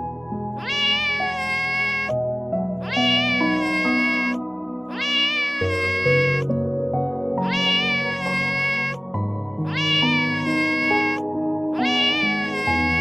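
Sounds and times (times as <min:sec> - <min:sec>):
soft background music: 0:00.0 - 0:13.0
cat meowing: 0:00.6 - 0:02.1, 0:02.8 - 0:06.5, 0:07.4 - 0:09.0, 0:09.6 - 0:13.0.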